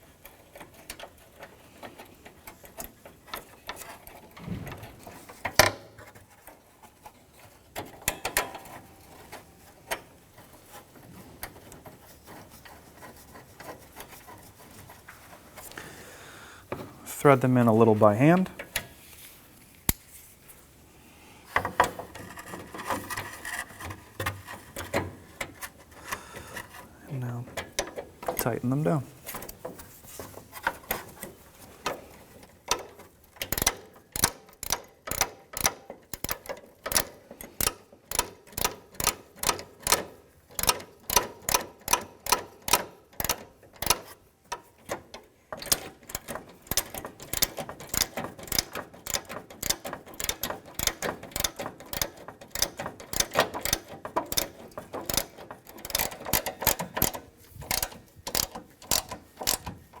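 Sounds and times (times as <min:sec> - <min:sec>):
socket ratchet clicking: 0:33.4 - 0:40.0, 0:45.6 - 0:59.7.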